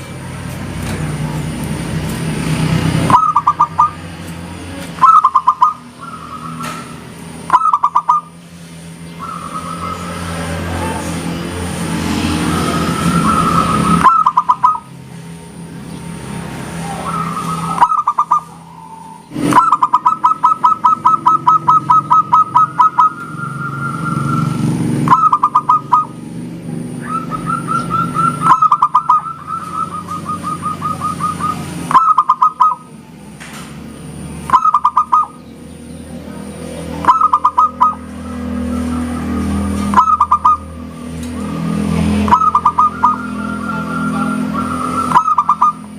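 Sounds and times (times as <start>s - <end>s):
dove cooing: 3.1s - 4.1s, 5.0s - 8.3s, 13.0s - 14.9s, 16.6s - 26.2s, 27.0s - 32.9s, 34.5s - 35.4s, 37.0s - 41.1s, 42.0s - 45.9s.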